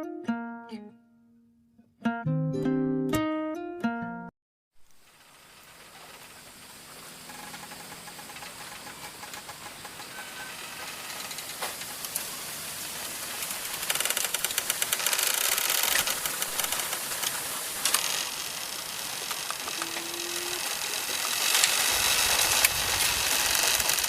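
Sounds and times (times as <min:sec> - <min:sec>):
bamboo stalks creaking and clicking: 0:04.9 - 0:24.0.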